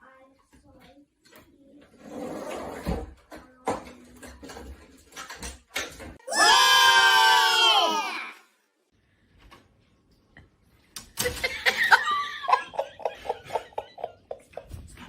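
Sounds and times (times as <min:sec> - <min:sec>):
person laughing: 0:11.2 - 0:14.9.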